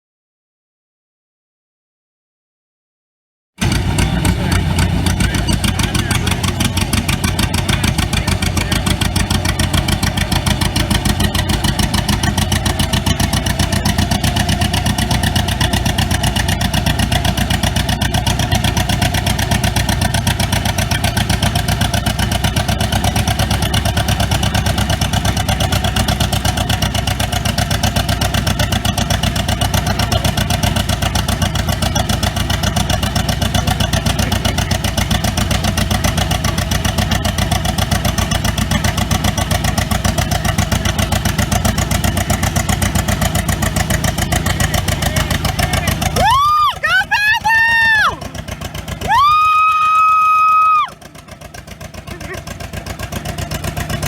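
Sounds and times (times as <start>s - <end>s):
tractor engine running: 3.6s - 54.0s.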